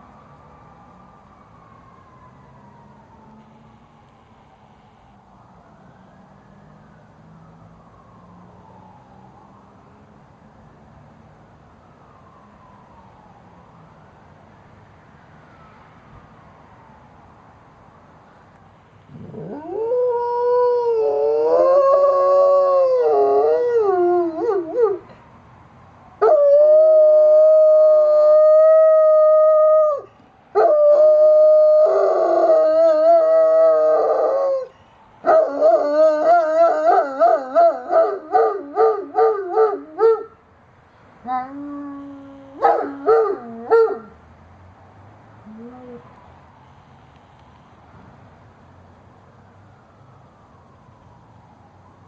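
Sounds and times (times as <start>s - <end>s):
dog howling: 19.2s - 25.0s.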